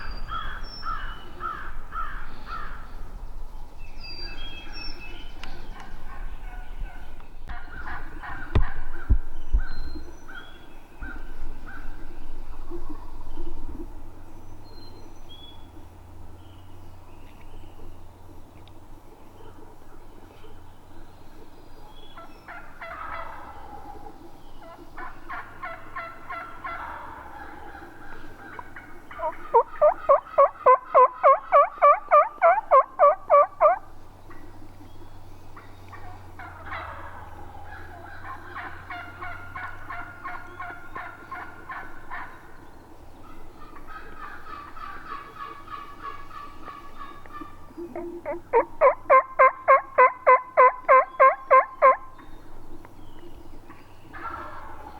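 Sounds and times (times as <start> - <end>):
wild turkeys gobbling: 5.6 - 9.2, 21.7 - 54.9.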